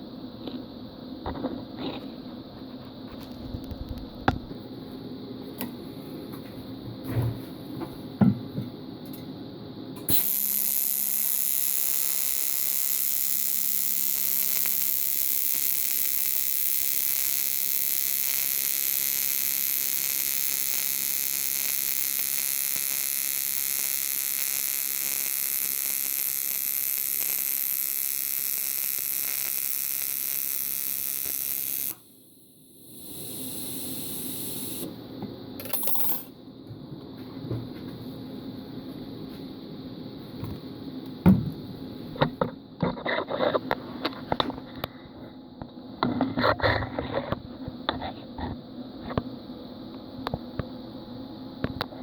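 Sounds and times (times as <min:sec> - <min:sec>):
welding arc buzzing and hissing: 0:10.0 - 0:35.0.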